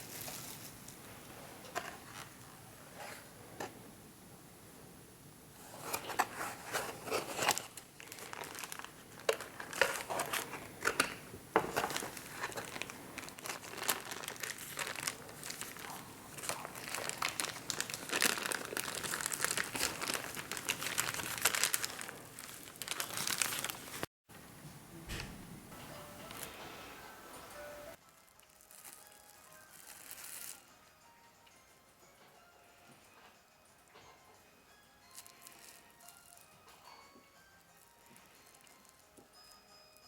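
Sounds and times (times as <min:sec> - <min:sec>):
wrapping material crinkling: 0:00.0 - 0:03.2, 0:05.6 - 0:24.1, 0:27.9 - 0:30.7, 0:35.1 - 0:36.6.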